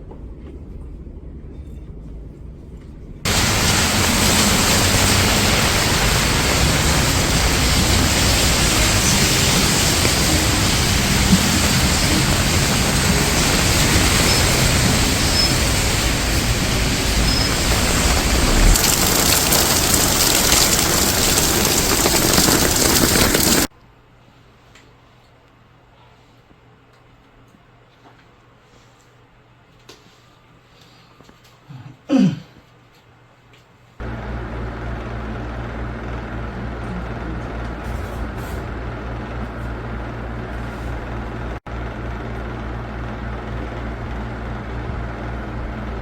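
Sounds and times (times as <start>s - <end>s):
loud steady rushing hiss: 3.3s - 23.7s.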